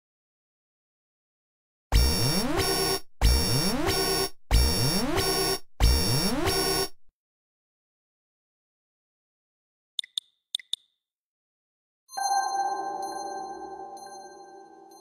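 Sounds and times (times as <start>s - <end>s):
phone alert tone: 12.1s - 15.0s.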